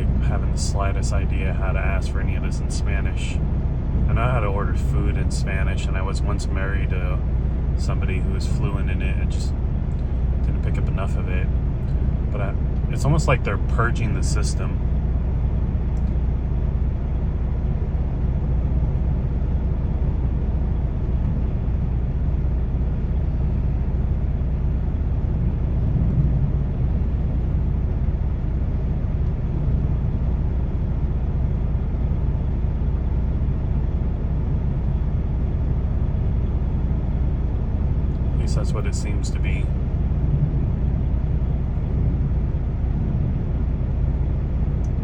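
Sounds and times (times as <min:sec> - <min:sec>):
low mechanical rumble: 0:00.0 - 0:45.0.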